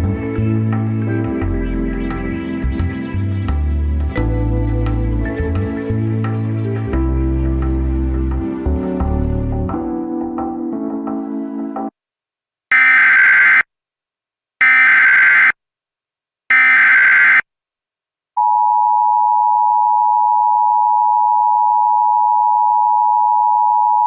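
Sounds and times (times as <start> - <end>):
screeching digital data bursts: 14.6 - 15.6, 16.5 - 17.4.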